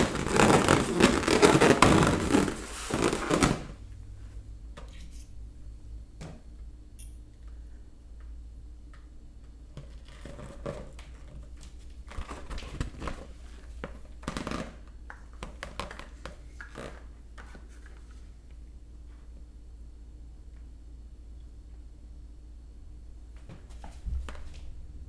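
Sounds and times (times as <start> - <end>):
balloon rubbing and squeaking: 0.0 - 3.8.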